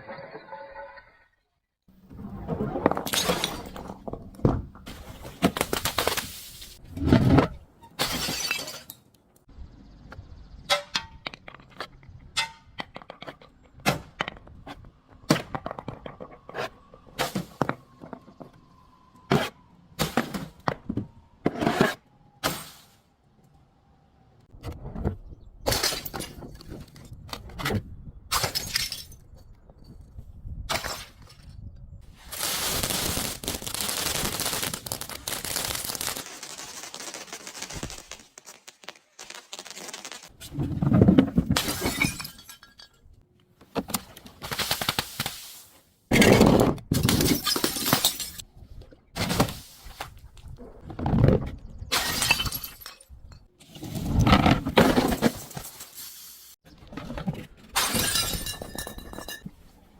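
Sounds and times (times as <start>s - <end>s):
glass bottles smashing: 3.0s - 3.9s, 8.0s - 9.0s, 28.4s - 29.2s, 41.6s - 43.0s, 47.0s - 48.4s, 52.0s - 53.1s, 57.8s - 59.5s.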